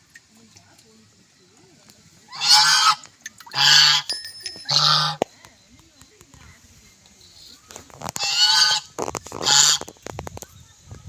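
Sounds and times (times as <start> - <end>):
duck quacking: 2.3 - 4.1, 4.7 - 5.2, 8.2 - 9.9.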